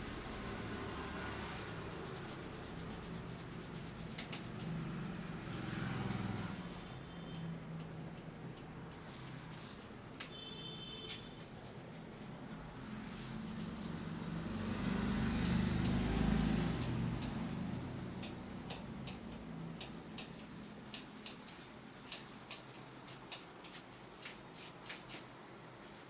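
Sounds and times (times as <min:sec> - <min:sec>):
sharp clicks of head massage: 0:00.0 - 0:05.4, 0:06.9 - 0:09.4, 0:15.4 - 0:25.1
passing vehicle: 0:00.0 - 0:08.2, 0:12.3 - 0:19.8.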